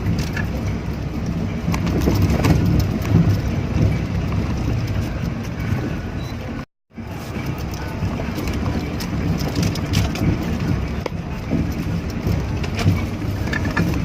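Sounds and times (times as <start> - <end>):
vehicle engine and tyres rumbling: 0.0 - 14.0.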